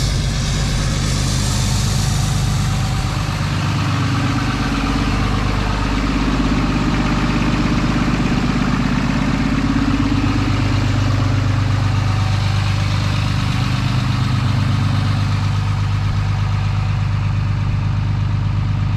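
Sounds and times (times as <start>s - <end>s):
diesel engine idling: 0.0s - 18.9s.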